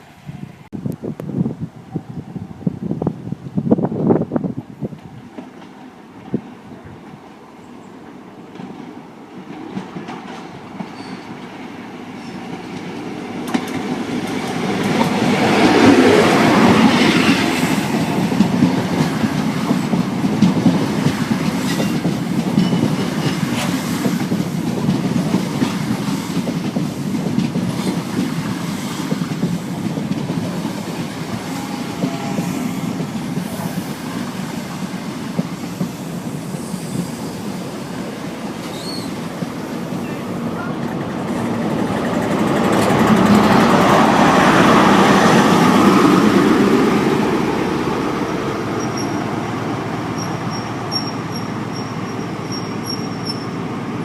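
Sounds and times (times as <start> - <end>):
train rumble: 0.0 - 54.0
wheels clicking over rail joints: 38.5 - 44.6.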